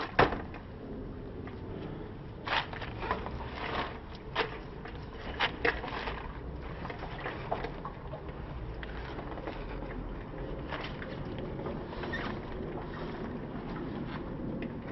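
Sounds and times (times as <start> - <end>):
steady low rumble: 0.0 - 14.9.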